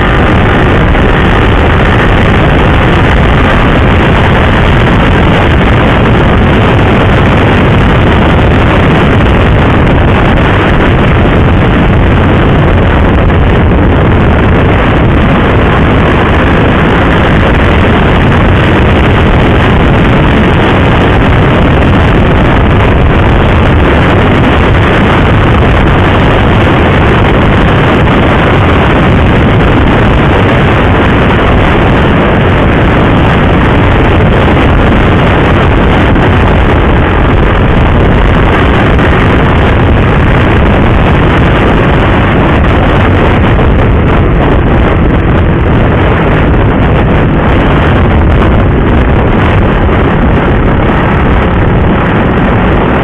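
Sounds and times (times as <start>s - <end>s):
motorcycle engine running: 0.0s - 53.0s
wind rush over microphone: 0.0s - 53.0s.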